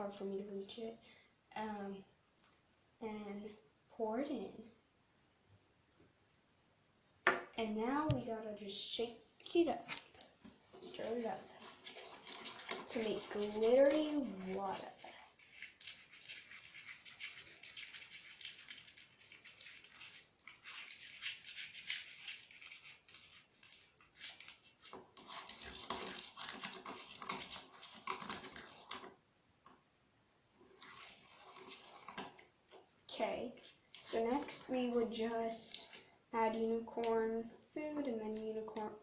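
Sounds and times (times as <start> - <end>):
stirrer scraping plastic container: 9.8 - 29.2, 30.6 - 32.5, 33.4 - 36.0.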